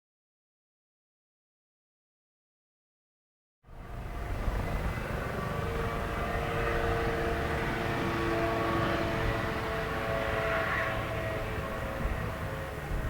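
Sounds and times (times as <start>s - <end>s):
helicopter rotors rumbling: 3.7s - 13.0s
turbine engine whining: 3.7s - 13.0s.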